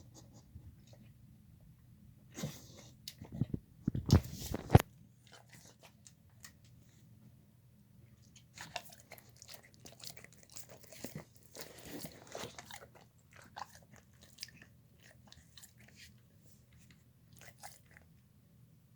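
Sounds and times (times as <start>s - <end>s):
dog chewing and smacking: 3.0s - 6.8s, 8.1s - 18.2s.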